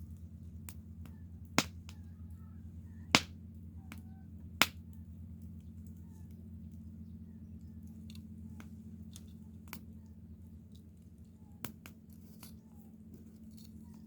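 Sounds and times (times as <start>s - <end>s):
campfire crackling: 0.0s - 2.3s, 3.0s - 7.0s
steady low hum: 0.0s - 14.0s
sharp loud pops of burning wood: 0.7s - 2.0s, 3.1s - 3.4s, 4.6s - 4.8s.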